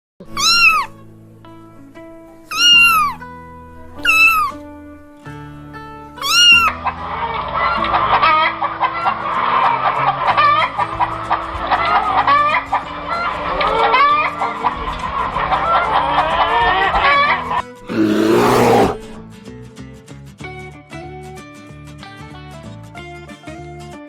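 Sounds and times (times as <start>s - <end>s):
cat meowing: 0.2s - 1.0s, 2.5s - 3.2s, 4.0s - 4.6s, 6.2s - 6.8s, 17.9s - 19.1s
background music: 0.2s - 20.4s
chickens clucking: 6.4s - 17.3s.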